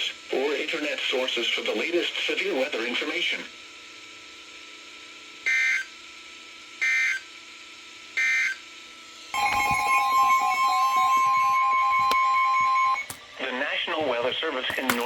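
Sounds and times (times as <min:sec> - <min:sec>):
loud steady alert tone: 0:09.4 - 0:13.2
broken tones: 0:09.4 - 0:13.3.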